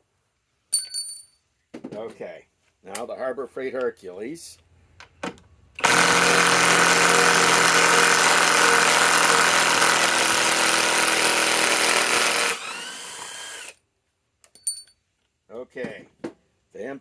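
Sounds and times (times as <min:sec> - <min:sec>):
impact wrench hammering: 0:05.8 - 0:13.7.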